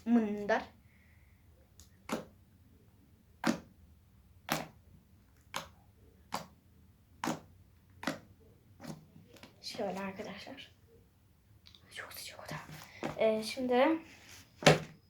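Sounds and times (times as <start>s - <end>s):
slime squeezed and popping: 4.5s - 4.8s, 5.4s - 6.6s, 7.2s - 9.0s.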